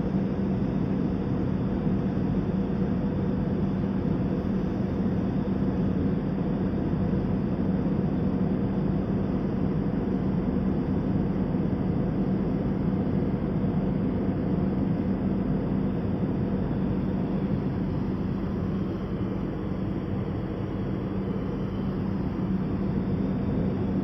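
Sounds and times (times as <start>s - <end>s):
constant low hum: 0.0s - 24.0s
jet engine and airflow roar: 0.0s - 24.0s.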